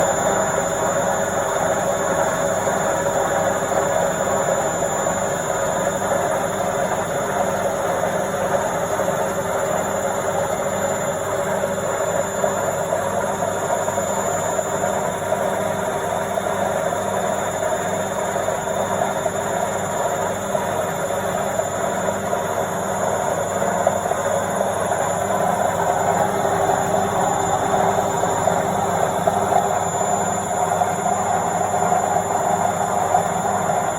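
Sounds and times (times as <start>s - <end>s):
washing machine spinning: 0.0s - 33.9s.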